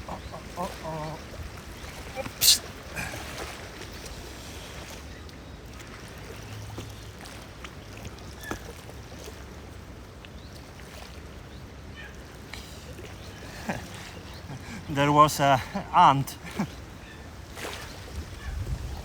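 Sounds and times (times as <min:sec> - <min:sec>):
lapping water: 0:00.0 - 0:05.0, 0:12.1 - 0:19.0.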